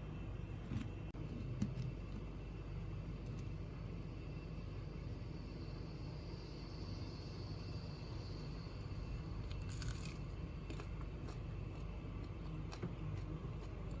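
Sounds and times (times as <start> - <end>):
person chewing crunchy food: 9.5 - 14.0.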